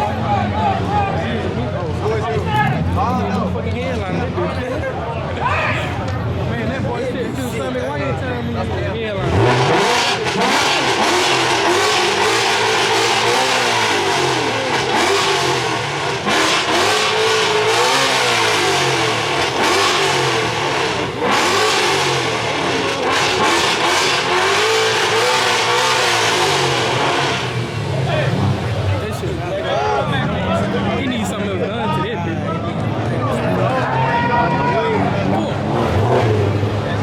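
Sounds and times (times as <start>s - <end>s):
car engine revving: 0.0s - 37.0s.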